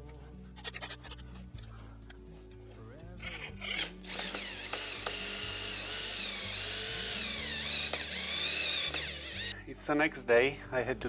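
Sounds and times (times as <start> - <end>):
background music: 0.0 - 11.0
power drill whining: 3.2 - 9.7.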